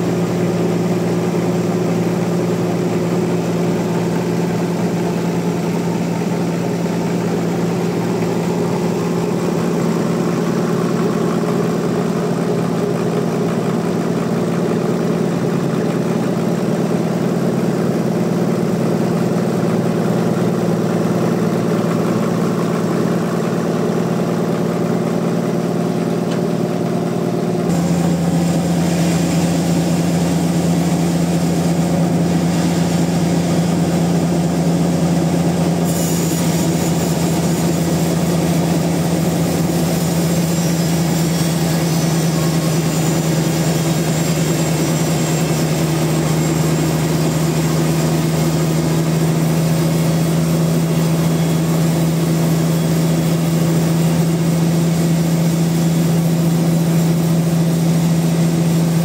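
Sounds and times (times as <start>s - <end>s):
sawmill machinery humming: 0.0s - 59.0s.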